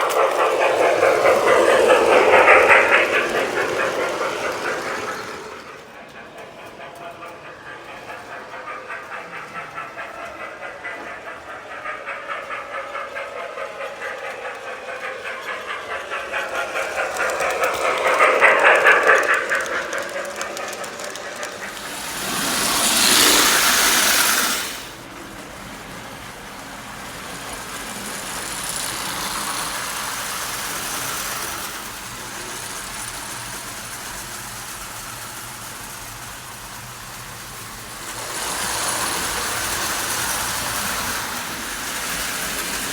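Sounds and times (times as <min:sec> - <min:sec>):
hissing: 0:00.0 - 0:25.2
toy electric trains on metal track: 0:00.0 - 0:42.9.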